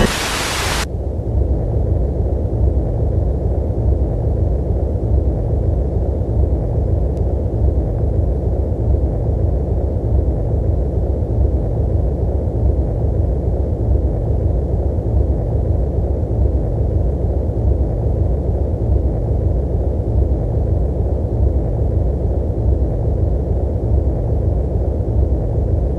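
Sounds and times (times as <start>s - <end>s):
deep rumbling noise: 0.0s - 25.9s.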